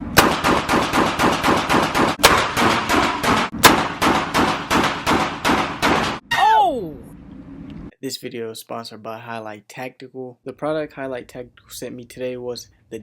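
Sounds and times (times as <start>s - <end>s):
rapid pistol fire: 0.1s - 6.2s.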